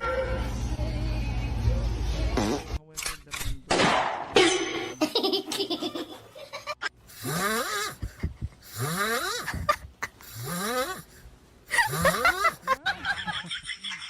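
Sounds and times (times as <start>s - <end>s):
person snoring: 7.1s - 12.8s.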